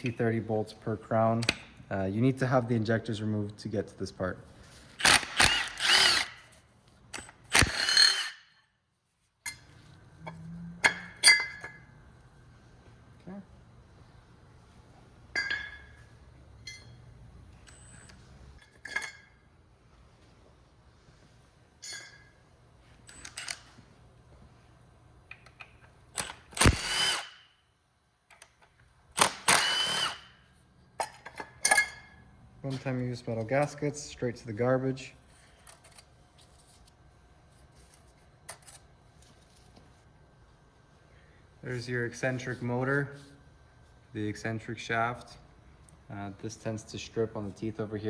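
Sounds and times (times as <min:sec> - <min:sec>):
cordless power tool motor: 0:05.0 - 0:06.5, 0:07.5 - 0:08.4, 0:26.2 - 0:27.4, 0:29.2 - 0:30.3.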